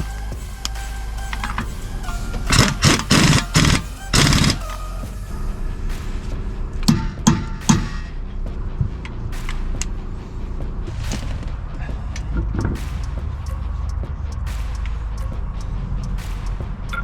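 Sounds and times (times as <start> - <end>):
background music with bass: 0.0 - 17.0
sharp percussive hits: 0.0 - 17.0.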